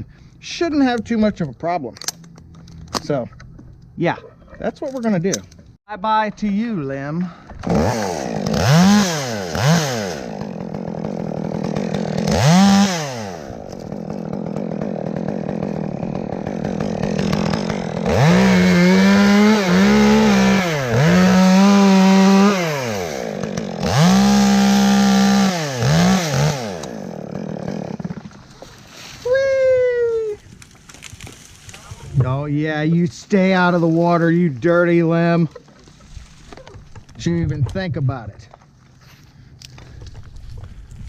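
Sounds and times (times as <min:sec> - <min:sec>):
chainsaw cutting a tree limb: 0:07.5 - 0:28.9.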